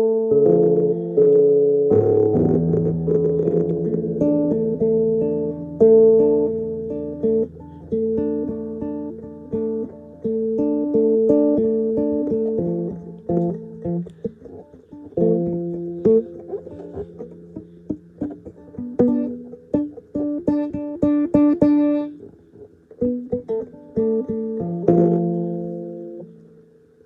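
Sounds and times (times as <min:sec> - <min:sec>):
guitar notes and chords: 0:00.0 - 0:27.0
fast picked guitar run: 0:12.1 - 0:20.8.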